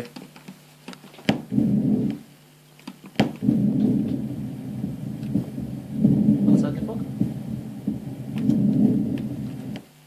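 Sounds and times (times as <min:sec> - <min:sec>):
lung breath sounds: 0:01.3 - 0:02.3, 0:03.3 - 0:09.8.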